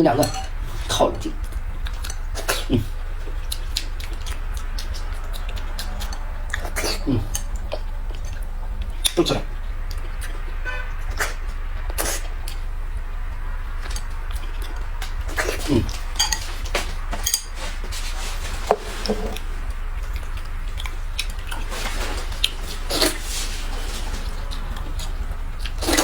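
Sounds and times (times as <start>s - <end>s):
low hum: 0.0s - 26.0s
utensils clinking against bowls: 0.1s - 1.0s, 15.4s - 18.0s.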